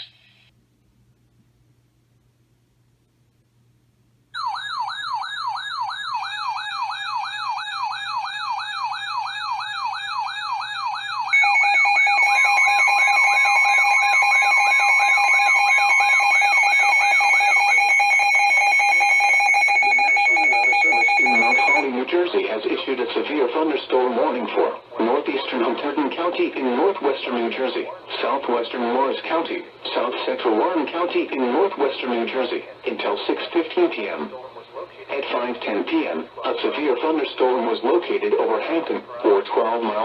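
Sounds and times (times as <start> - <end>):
fast warbling siren: 4.4 - 21.8
loud steady alert tone: 4.4 - 21.9
steady high alert tones: 4.4 - 21.9.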